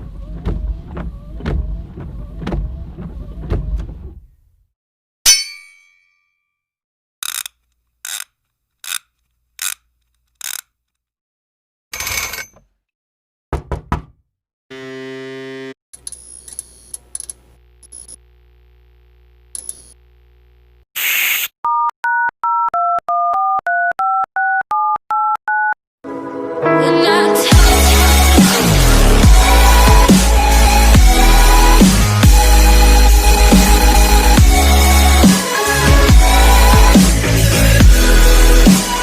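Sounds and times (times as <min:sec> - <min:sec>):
telephone keypad beeps: 0:21.7 - 0:25.8.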